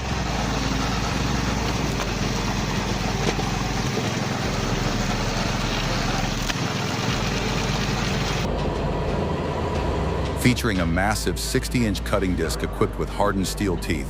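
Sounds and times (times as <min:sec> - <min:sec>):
small gas engine running: 0:00.0 - 0:08.5.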